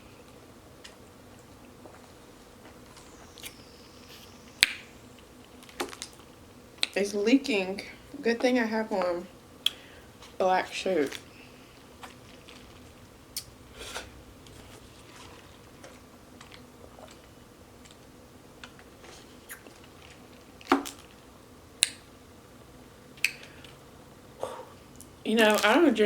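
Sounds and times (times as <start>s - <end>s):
mouth smacks and clicks: 23.2s - 23.5s.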